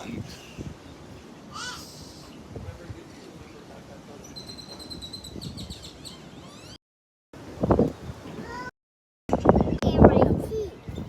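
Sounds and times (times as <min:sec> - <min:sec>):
birds chirping: 0:00.0 - 0:06.8.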